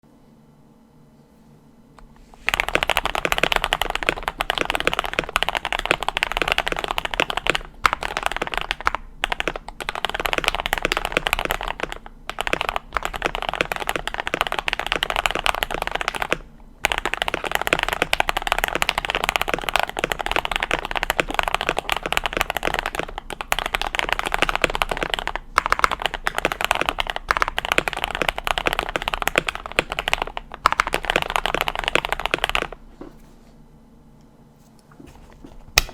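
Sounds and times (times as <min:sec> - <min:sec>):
mechanical keyboard typing: 0:02.4 - 0:32.8.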